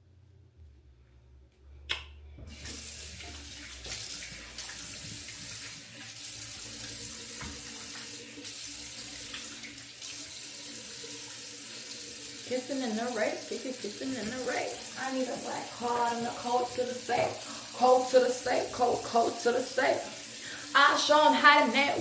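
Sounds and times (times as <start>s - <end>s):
tap running into a sink: 2.4s - 10.4s, 16.6s - 17.5s.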